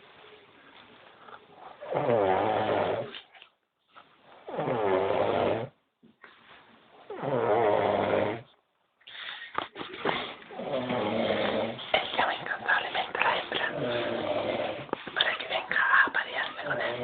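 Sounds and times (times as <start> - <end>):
man snoring: 1.8 - 3.1, 4.6 - 5.8, 7.2 - 8.5, 10.6 - 11.8, 13.7 - 14.9
quiet breathing: 8.4 - 17.0.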